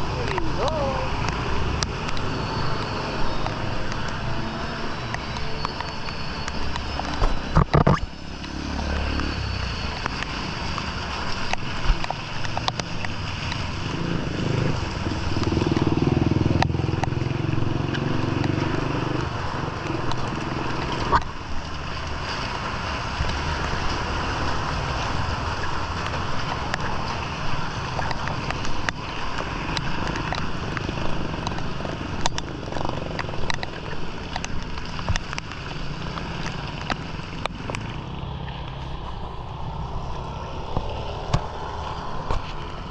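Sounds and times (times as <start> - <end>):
traffic passing on street: 0.0 - 42.9.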